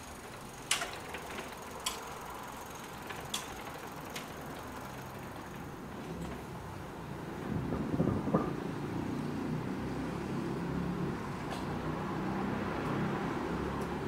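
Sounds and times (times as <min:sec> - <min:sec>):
car passing: 0:00.0 - 0:14.0.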